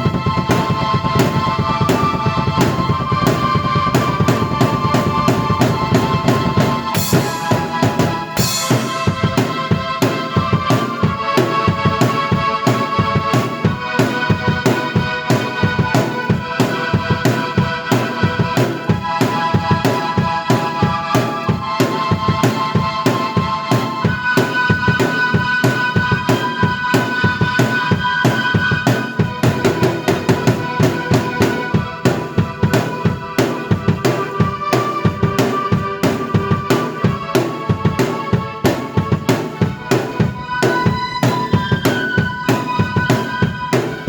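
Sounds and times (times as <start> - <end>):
keyboard chords and melody: 0.0 - 44.0
kick and snare drums: 0.0 - 44.0
cymbal crashes: 6.9 - 9.4.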